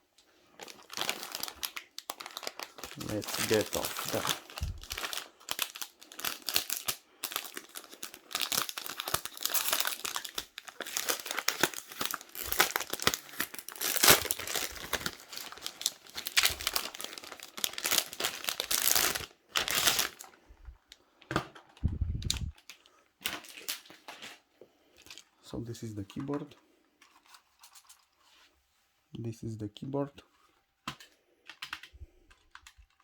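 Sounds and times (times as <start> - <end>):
plastic wrapping crinkling: 0.5 - 24.4.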